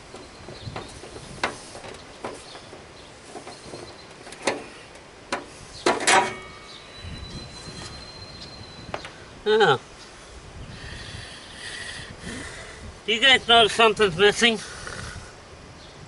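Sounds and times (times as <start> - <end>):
tractor hood clicks and knocks: 0.0 - 6.5.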